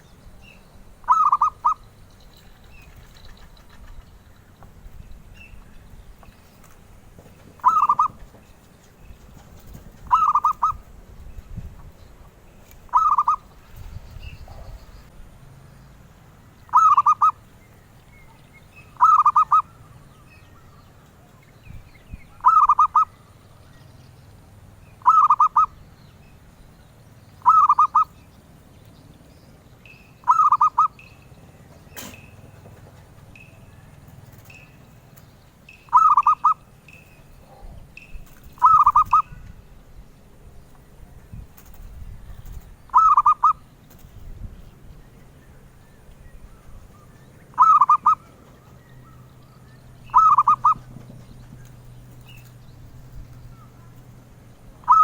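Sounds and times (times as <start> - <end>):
dove cooing: 1.0 - 2.0, 7.6 - 8.4, 9.4 - 11.0, 12.9 - 13.7, 16.7 - 17.4, 18.9 - 21.4, 22.3 - 23.4, 25.0 - 25.8, 27.4 - 28.2, 30.2 - 31.0, 35.9 - 36.7, 37.3 - 39.6, 42.4 - 44.1, 46.6 - 51.2, 54.8 - 55.0.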